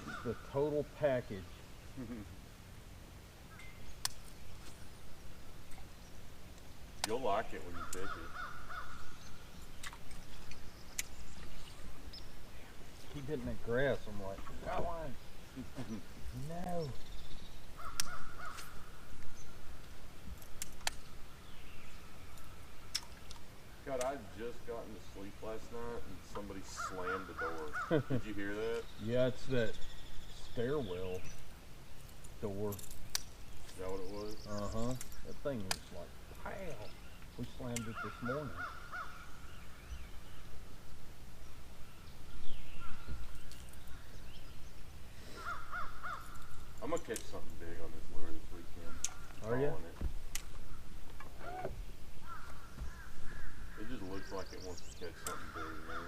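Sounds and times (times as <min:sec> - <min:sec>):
crow cawing: 0:00.0 - 0:00.6, 0:07.7 - 0:09.2, 0:17.8 - 0:19.1, 0:26.7 - 0:28.2, 0:37.8 - 0:39.5, 0:45.3 - 0:46.7, 0:52.2 - 0:54.0, 0:55.2 - 0:56.0
bird calling: 0:00.0 - 0:02.4, 0:03.4 - 0:20.1, 0:20.9 - 0:56.0
sharp clicks: 0:04.0 - 0:04.4, 0:09.8 - 0:11.5, 0:19.8 - 0:21.1, 0:32.7 - 0:33.9, 0:34.9 - 0:35.9, 0:37.7 - 0:37.9.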